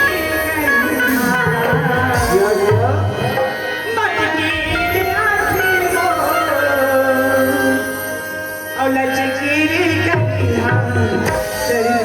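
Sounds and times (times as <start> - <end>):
tabla-style hand drums: 0.0 - 12.0.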